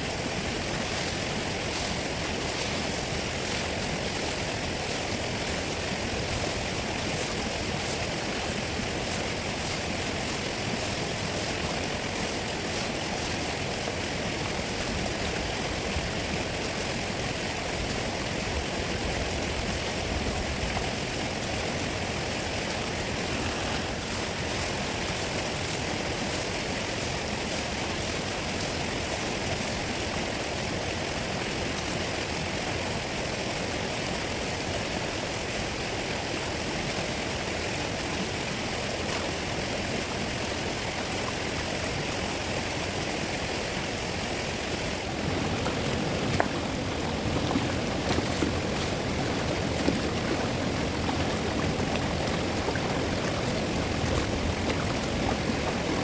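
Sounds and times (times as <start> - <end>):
river water rushing: 0.0 - 56.0.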